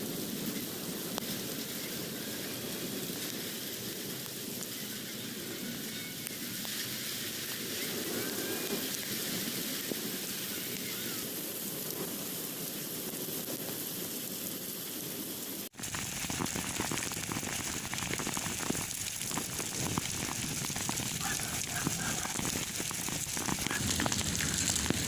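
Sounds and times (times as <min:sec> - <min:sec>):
heavy rain falling: 0:15.8 - 0:25.0.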